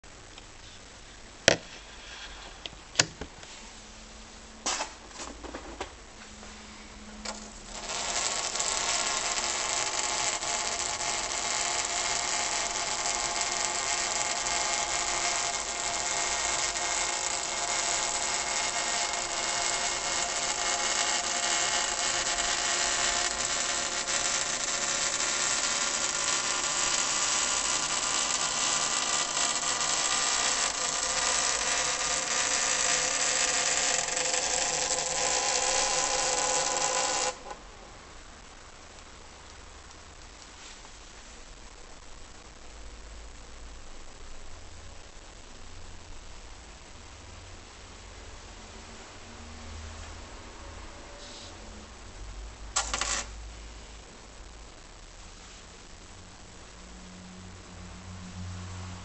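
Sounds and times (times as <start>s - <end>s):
sharp clicks and knocks: 1.5s - 1.7s, 2.6s - 3.4s
dry ice buzzing squeal: 7.6s - 37.4s.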